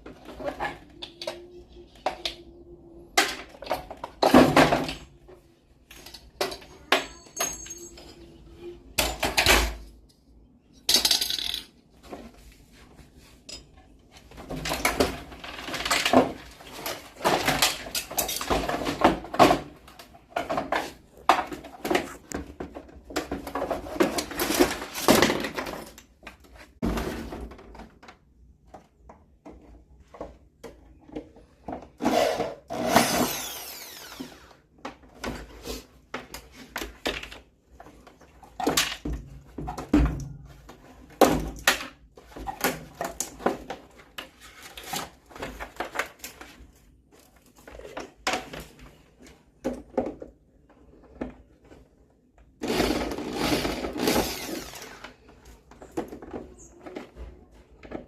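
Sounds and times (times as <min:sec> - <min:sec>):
tools knocking and rattling: 0:05.8 - 0:10.0, 0:13.4 - 0:26.2.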